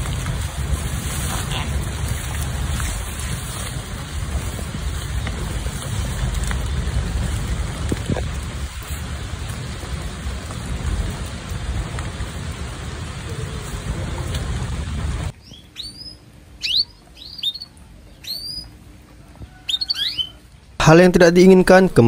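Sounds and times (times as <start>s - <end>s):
rushing water: 0.0s - 15.3s.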